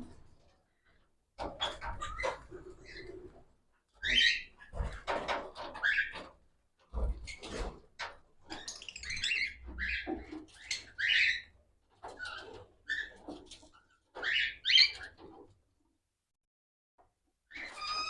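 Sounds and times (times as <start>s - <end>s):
cockatiels squawking: 8.6s - 11.4s, 14.2s - 15.1s.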